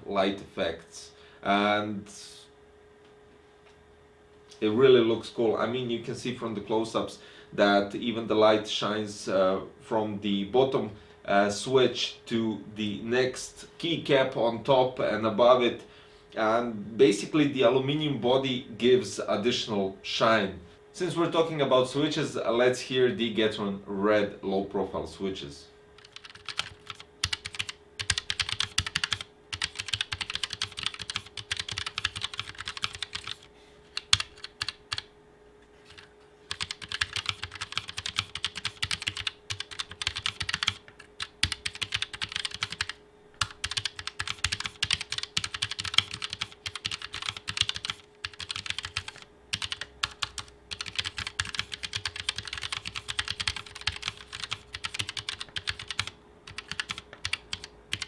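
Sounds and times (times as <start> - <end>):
quiet keyboard typing: 26.0 - 35.1, 35.9 - 58.0.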